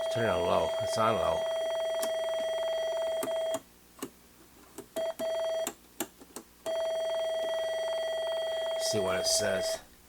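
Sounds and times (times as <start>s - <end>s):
electronic test tone beep: 0.0s - 3.6s, 5.0s - 5.7s, 6.7s - 9.8s.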